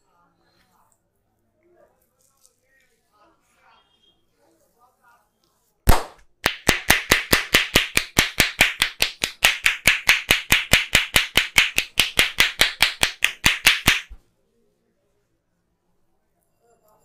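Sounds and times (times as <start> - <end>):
hands slapping rhythmically: 5.9 - 14.2.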